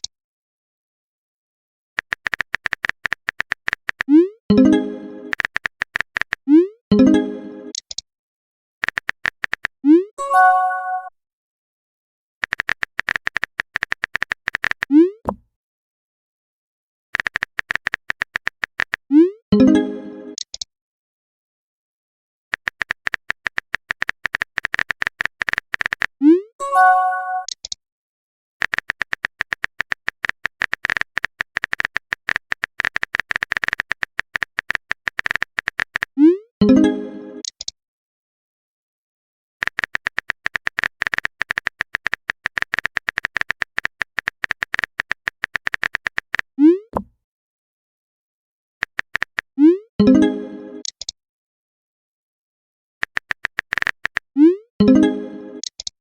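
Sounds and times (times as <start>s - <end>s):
phone keyboard typing clicks: 2.0s - 4.7s, 5.3s - 6.5s, 8.8s - 9.8s, 12.4s - 15.4s, 17.2s - 19.0s, 22.5s - 26.1s, 27.4s - 27.8s, 28.6s - 36.1s, 37.4s - 37.8s, 39.6s - 47.1s, 48.8s - 49.5s, 50.8s - 51.2s, 53.0s - 54.3s, 55.6s - 56.0s
message notification chime: 10.2s - 11.1s, 26.6s - 27.5s.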